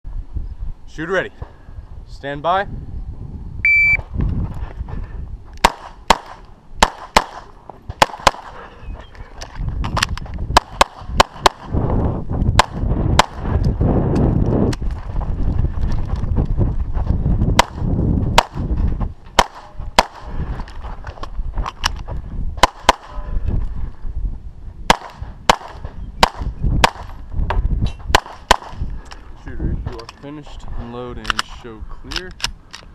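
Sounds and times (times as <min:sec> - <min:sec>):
pistol shots: 0:05.6 - 0:08.5, 0:10.6 - 0:11.7, 0:19.4 - 0:20.3, 0:22.6 - 0:23.2, 0:24.9 - 0:27.1, 0:28.1 - 0:28.8.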